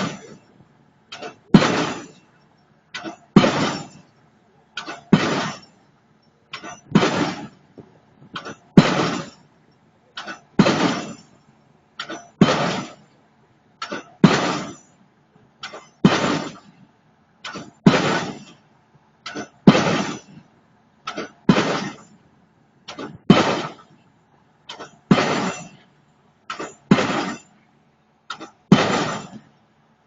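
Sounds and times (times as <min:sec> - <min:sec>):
impact hammer striking pile: 0:00.0 - 0:00.5, 0:01.2 - 0:02.4, 0:03.0 - 0:04.2, 0:04.8 - 0:05.9, 0:06.5 - 0:09.6, 0:10.2 - 0:13.1, 0:13.8 - 0:15.0, 0:15.6 - 0:16.8, 0:17.5 - 0:18.6, 0:19.3 - 0:20.4, 0:21.1 - 0:22.2, 0:22.9 - 0:23.9, 0:24.7 - 0:25.9, 0:26.5 - 0:27.6, 0:28.3 - 0:29.5.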